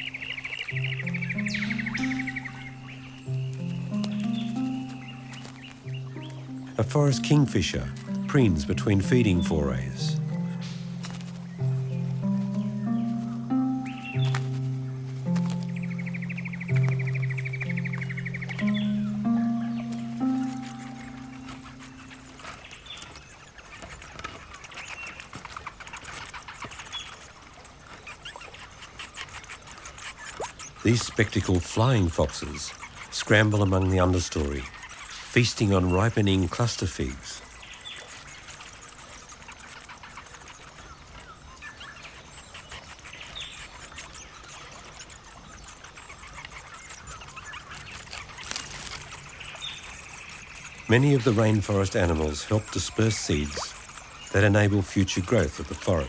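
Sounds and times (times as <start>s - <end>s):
flying foxes squeaking: 0.0s - 8.3s
steady background hiss: 0.0s - 22.4s, 48.5s - 56.0s
rustling foliage: 0.0s - 56.0s
sharp rustle: 47.7s - 49.9s.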